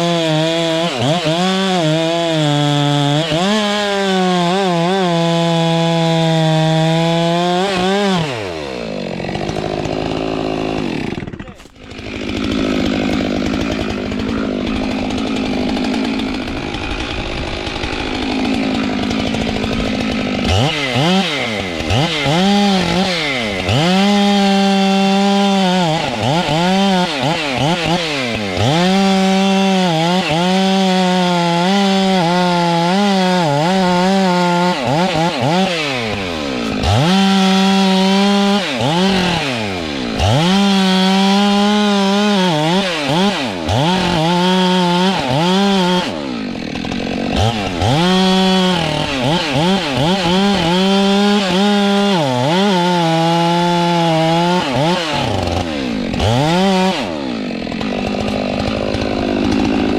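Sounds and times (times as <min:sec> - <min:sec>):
chainsaw revving: 0:00.0 - 0:59.9.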